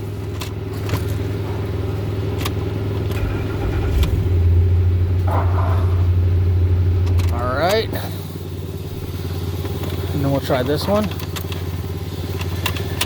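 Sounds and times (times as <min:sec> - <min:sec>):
car engine running: 0:00.0 - 0:13.0
engine cranking: 0:03.0 - 0:06.3.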